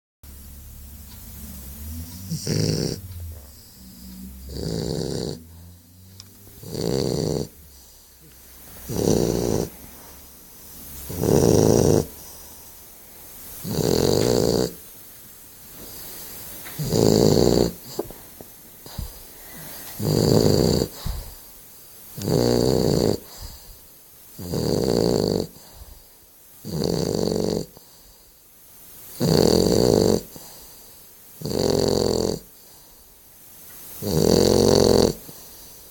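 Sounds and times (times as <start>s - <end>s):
loud snoring: 1.4s - 12.7s, 13.6s - 14.8s, 16.7s - 18.2s, 18.8s - 21.5s, 22.2s - 23.8s, 24.4s - 26.0s, 26.6s - 28.0s, 29.2s - 30.7s, 31.4s - 32.6s, 34.0s - 35.9s.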